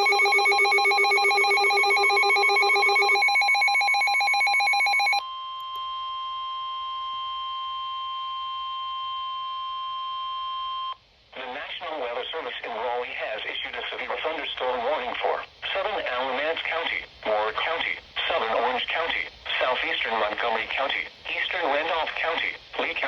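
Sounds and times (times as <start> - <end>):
pulsing ringing alarm: 0.0 - 5.2
steady alert tone: 0.0 - 5.2.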